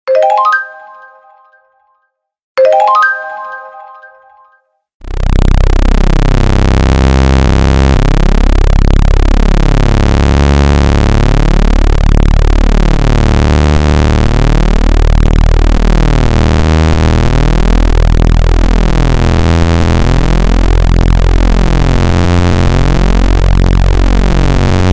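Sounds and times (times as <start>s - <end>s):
electronic speaker-cleaning buzz: 5.0s - 24.9s.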